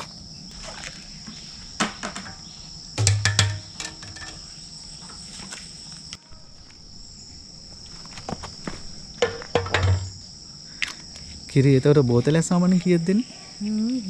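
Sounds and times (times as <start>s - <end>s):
insects chirring: 0.0s - 14.0s
knocks and thumps: 1.8s - 2.4s, 3.0s - 4.5s, 9.2s - 10.2s.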